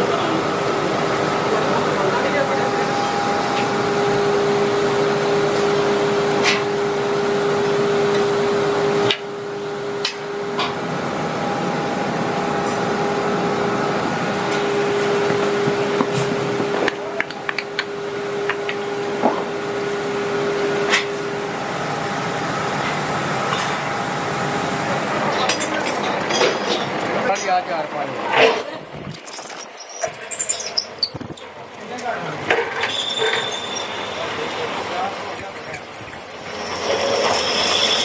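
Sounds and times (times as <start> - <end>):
machinery humming: 0.0 - 27.2.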